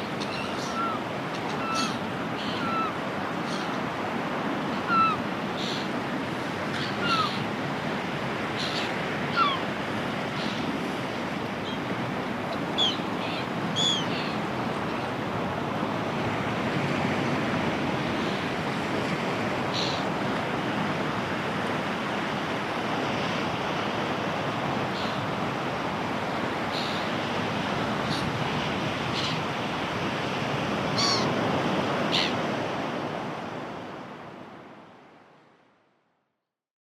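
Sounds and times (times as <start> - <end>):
sea waves breaking: 0.0 - 35.2
seagull calls: 0.1 - 3.8, 4.7 - 5.9, 6.8 - 7.5, 8.6 - 9.6, 12.8 - 14.4, 29.1 - 29.5, 30.9 - 31.4.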